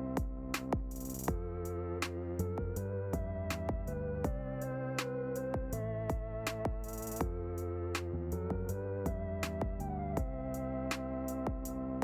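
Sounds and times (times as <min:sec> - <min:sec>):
electronic instrumental music: 0:00.0 - 0:12.0.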